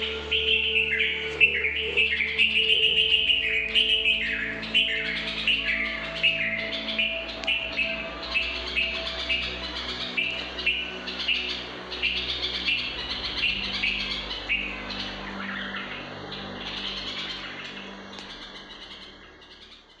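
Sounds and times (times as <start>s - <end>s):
birds chirping: 0.0s - 20.0s
steady low hum: 0.0s - 20.0s.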